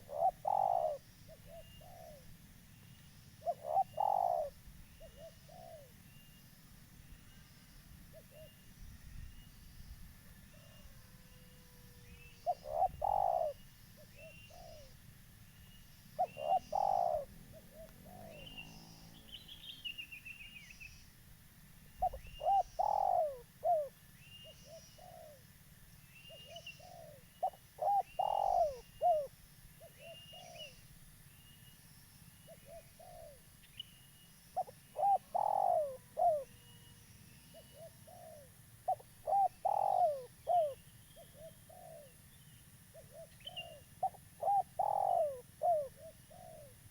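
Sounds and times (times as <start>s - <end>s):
dove cooing: 0.0s - 2.4s, 3.4s - 6.0s, 10.5s - 14.9s, 16.2s - 18.7s, 22.0s - 25.4s, 26.3s - 30.8s, 32.5s - 33.4s, 34.6s - 36.8s, 37.5s - 42.2s, 42.9s - 46.9s
small birds chirping: 0.0s - 6.5s, 12.0s - 21.1s, 21.8s - 25.4s, 26.0s - 46.9s.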